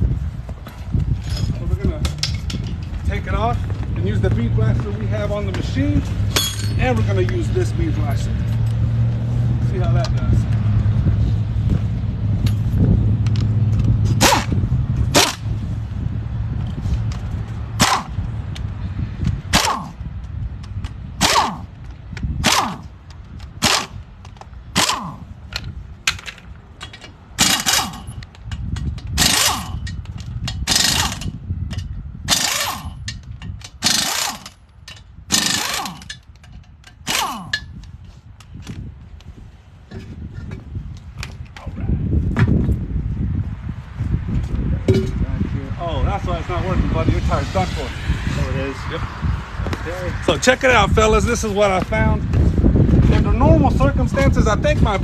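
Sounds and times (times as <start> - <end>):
impact wrench bursts: 19.5 - 20.0, 21.2 - 21.8, 22.4 - 24.0, 26.2 - 28.2, 29.0 - 37.6.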